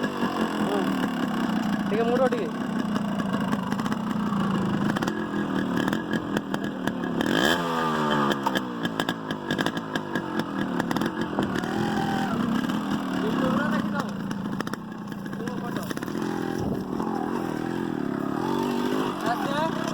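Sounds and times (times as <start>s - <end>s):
two-stroke motorcycle engine revving: 0.0s - 19.9s.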